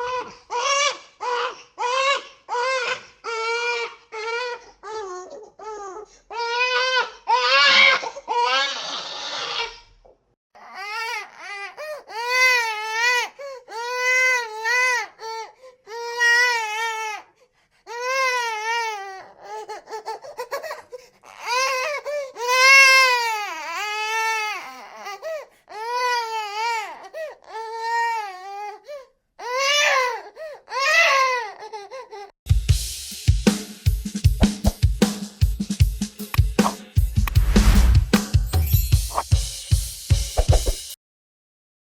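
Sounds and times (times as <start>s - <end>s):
newborn baby crying: 0.0s - 9.9s, 10.6s - 32.4s.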